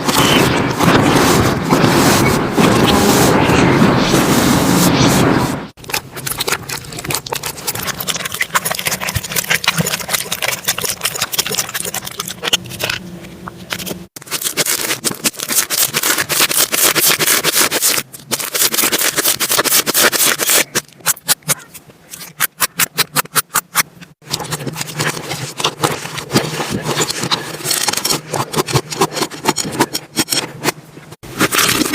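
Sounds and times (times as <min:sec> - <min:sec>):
slime squishing wetly: 0:05.8 - 0:13.0.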